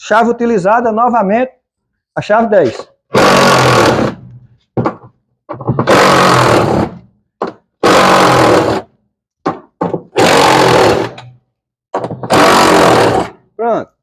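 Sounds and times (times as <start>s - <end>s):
cordless drill bursts: 3.1s - 4.2s, 5.9s - 7.0s, 7.8s - 8.8s, 10.2s - 11.2s, 12.3s - 13.4s.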